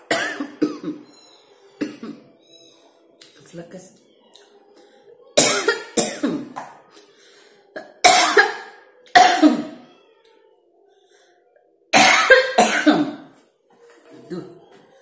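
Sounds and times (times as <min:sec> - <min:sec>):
person coughing hard: 0:00.0 - 0:01.0, 0:05.4 - 0:06.5, 0:07.8 - 0:09.7, 0:12.0 - 0:13.2.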